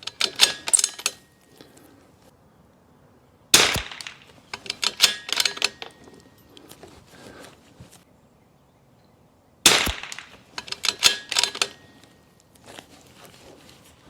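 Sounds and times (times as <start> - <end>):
rifle shot: 3.6 - 5.7, 9.6 - 11.7.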